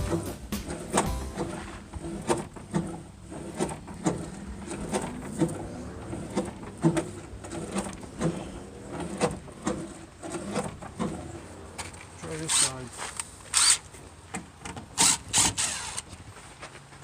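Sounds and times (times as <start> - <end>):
van door creaking and clicking: 0.7 - 12.1.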